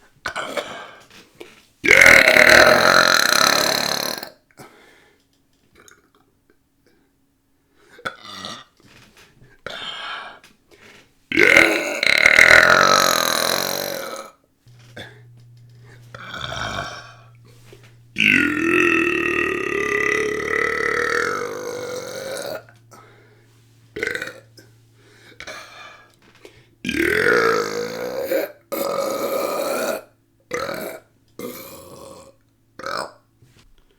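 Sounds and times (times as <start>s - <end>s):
loud long belches: 1.9s - 4.3s, 11.3s - 14.2s, 14.8s - 25.9s, 26.8s - 33.2s.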